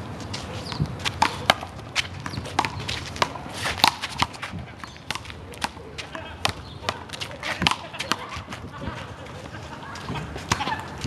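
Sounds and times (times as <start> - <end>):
footsteps scuffing court: 0.0 - 11.0.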